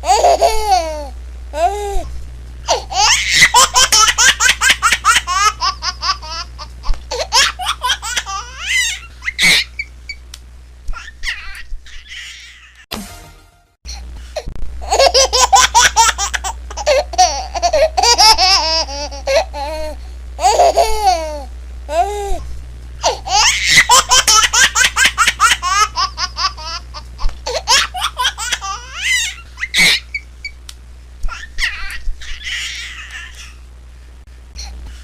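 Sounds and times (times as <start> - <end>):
baby laughing and squealing: 0.0 - 1.8, 2.7 - 6.5, 7.1 - 9.9, 10.9 - 12.9, 14.8 - 22.4, 23.0 - 30.3, 31.3 - 33.6.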